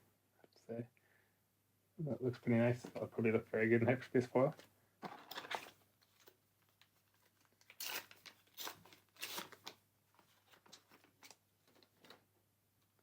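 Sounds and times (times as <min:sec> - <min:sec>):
foil wrapper tearing and crinkling: 0:07.6 - 0:09.8.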